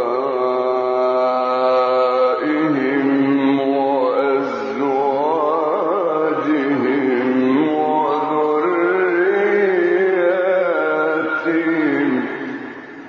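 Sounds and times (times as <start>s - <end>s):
man chanting melodic recitation: 0.0s - 13.0s.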